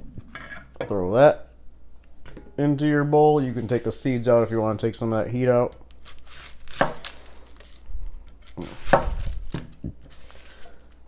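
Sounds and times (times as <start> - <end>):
knife knocking on cutting board: 8.6 - 9.7.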